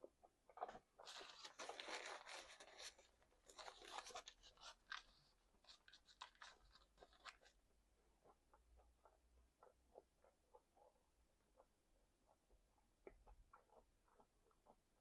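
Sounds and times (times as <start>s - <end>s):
crunchy chewing: 8.2s - 15.0s.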